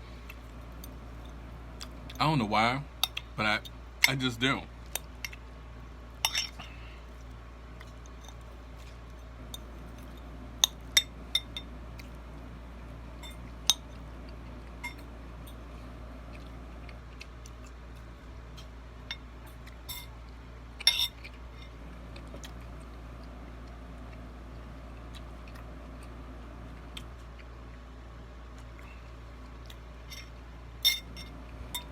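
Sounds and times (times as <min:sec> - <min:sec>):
steady low hum: 0:00.0 - 0:31.9
cutlery clinking against a bowl: 0:06.2 - 0:06.7, 0:18.6 - 0:20.1, 0:20.8 - 0:21.8, 0:30.1 - 0:31.9.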